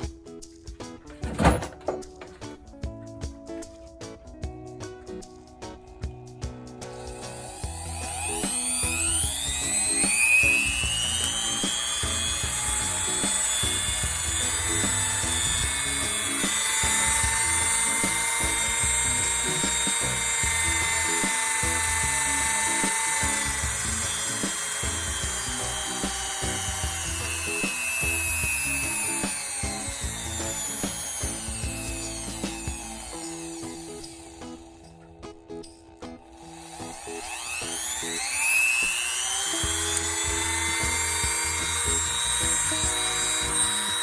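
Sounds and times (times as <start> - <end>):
rotary tool whining: 6.8 - 44.0.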